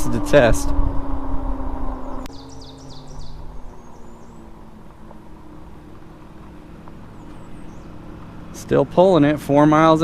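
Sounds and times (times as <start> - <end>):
electric bike motor whining: 0.0 - 8.6
small bird chirping: 1.9 - 8.3.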